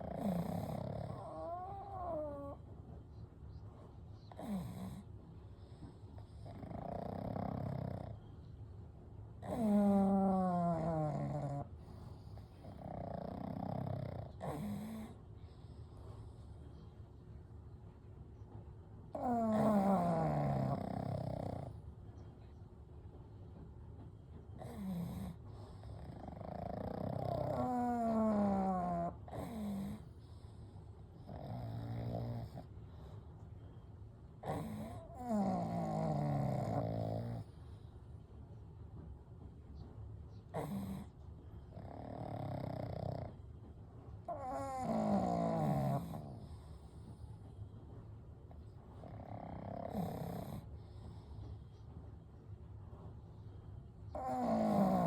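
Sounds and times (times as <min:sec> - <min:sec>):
dogs snoring: 0:00.0 - 0:02.7, 0:03.7 - 0:08.5, 0:09.3 - 0:17.0, 0:19.0 - 0:22.5, 0:23.5 - 0:38.2, 0:39.0 - 0:55.0.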